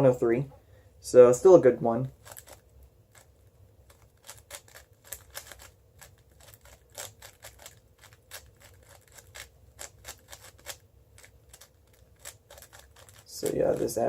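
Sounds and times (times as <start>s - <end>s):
plastic puzzle cube clicking: 2.2s - 3.3s, 3.9s - 13.8s.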